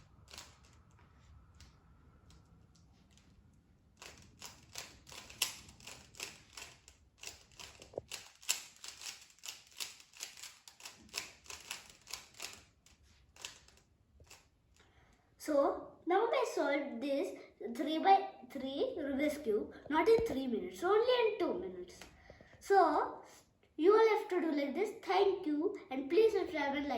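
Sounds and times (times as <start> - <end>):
puzzle cube plastic clicking: 0.1 - 0.9, 4.0 - 12.8, 13.4 - 14.5.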